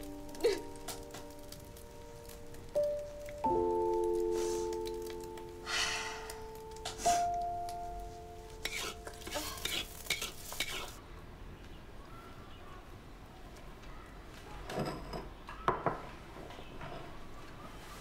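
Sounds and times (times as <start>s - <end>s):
held musical tone: 0.0s - 9.4s
utensils scraping cookware: 8.6s - 11.0s.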